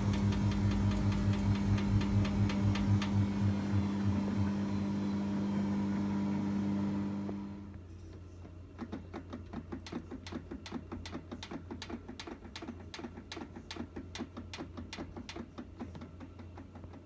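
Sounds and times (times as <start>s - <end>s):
washing machine rapid clicking: 0.0s - 4.5s, 8.8s - 17.0s
steady low hum: 0.0s - 5.2s.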